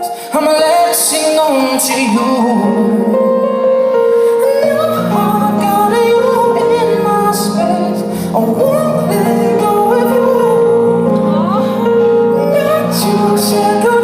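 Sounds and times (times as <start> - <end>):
high singing voice: 0.0 - 3.4
held musical accompaniment: 0.0 - 14.0.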